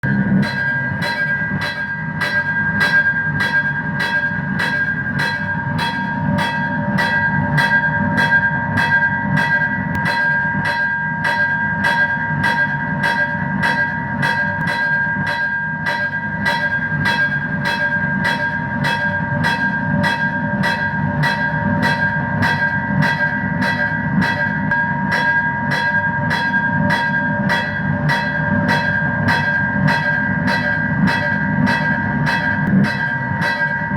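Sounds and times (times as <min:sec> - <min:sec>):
railroad crossing bell ringing: 0:00.0 - 0:33.9.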